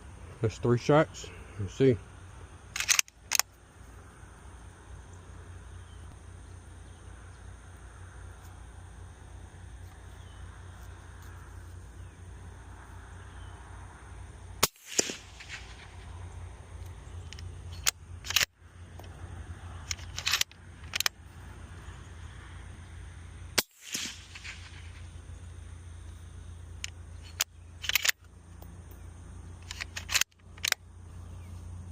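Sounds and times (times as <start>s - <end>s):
rifle bolt clicks: 2.8s - 3.5s, 17.3s - 19.1s, 19.8s - 21.1s, 26.8s - 28.2s, 29.6s - 30.8s
suppressed rifle shots: 2.8s - 3.5s, 14.6s - 16.2s, 23.6s - 25.1s.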